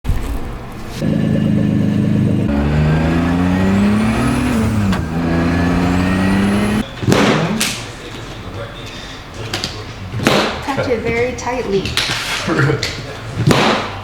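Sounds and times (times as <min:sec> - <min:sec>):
car engine accelerating: 0:01.0 - 0:06.9.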